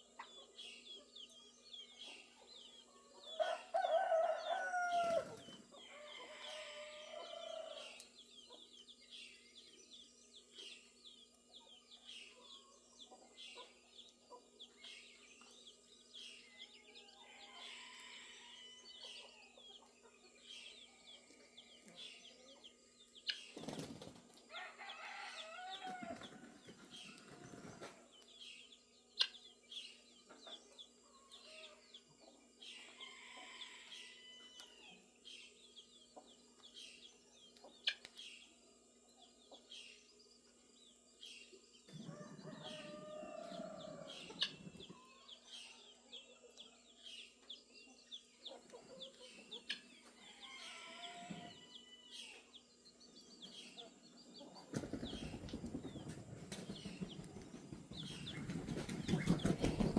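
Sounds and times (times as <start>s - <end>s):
chickens clucking: 0.0s - 9.2s, 10.5s - 15.6s, 17.1s - 24.5s, 25.8s - 28.3s, 29.1s - 35.1s, 37.5s - 38.3s, 41.9s - 59.9s
small birds chirping: 0.0s - 59.9s
wings fluttering: 4.9s - 5.6s, 23.5s - 24.4s, 25.8s - 28.1s, 54.7s - 59.9s.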